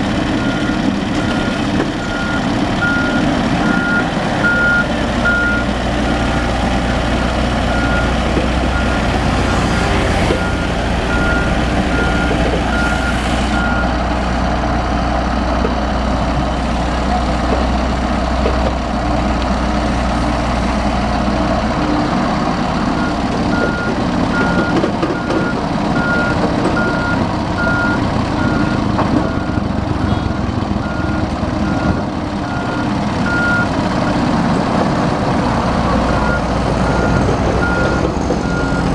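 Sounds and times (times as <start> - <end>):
backhoe engine running: 0.0 - 38.9
reversing alarm beeps: 0.4 - 14.0, 23.0 - 33.7, 36.2 - 38.9.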